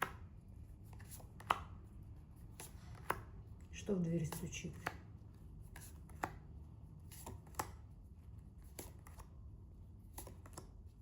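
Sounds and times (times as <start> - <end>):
cards clicking and tapping: 0.0 - 0.3, 0.9 - 1.8, 2.5 - 3.3, 4.2 - 5.1, 5.7 - 6.5, 7.1 - 7.9, 8.6 - 9.4, 10.1 - 10.8.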